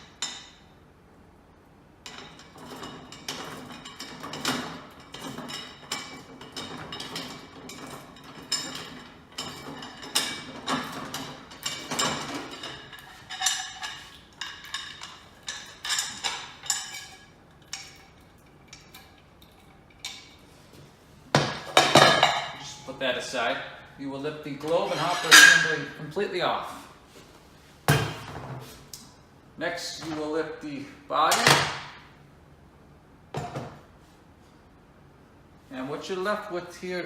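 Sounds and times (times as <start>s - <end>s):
clicks and clinks of hard parts: 2.0s - 20.5s.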